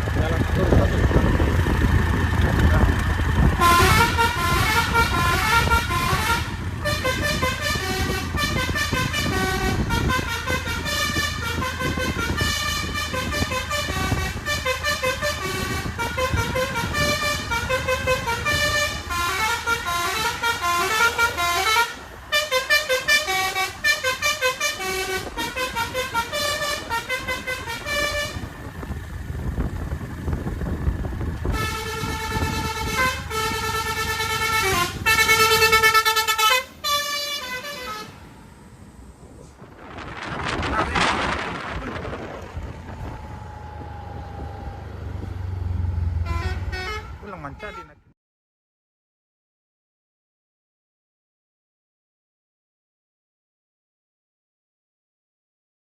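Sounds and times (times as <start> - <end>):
bus engine low drone: 0.0 - 48.1
multi-tone bus horn melody: 3.4 - 29.2, 31.4 - 38.6, 45.8 - 48.1.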